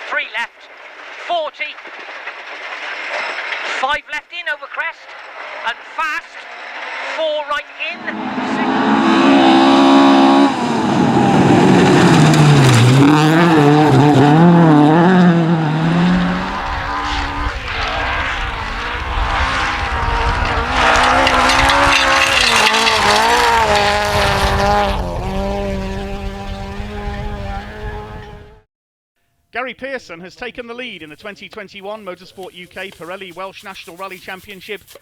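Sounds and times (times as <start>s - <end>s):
tyre and road noise: 0.0s - 28.5s, 31.0s - 35.0s
rally car engine at full throttle: 4.9s - 28.6s.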